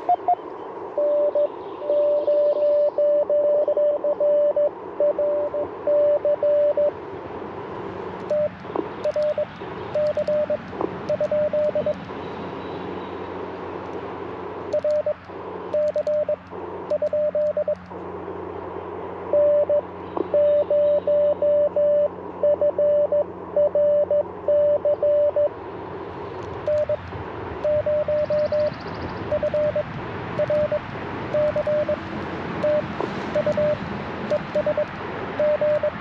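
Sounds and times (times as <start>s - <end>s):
morse code tone: 0.0s - 0.4s, 1.0s - 6.9s, 8.3s - 12.0s, 14.7s - 17.8s, 19.3s - 25.5s, 26.7s - 27.0s, 27.6s - 28.7s, 29.3s - 32.0s, 32.6s - 36.0s
radio band noise hiss: 0.0s - 22.5s, 25.5s - 36.0s
faint sharp ticks: 8.2s - 12.1s, 14.7s - 18.0s.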